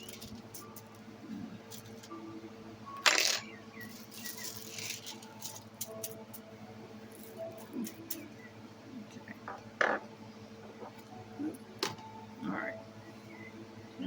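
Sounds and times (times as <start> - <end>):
craft supplies clattering: 3.1 - 5.6.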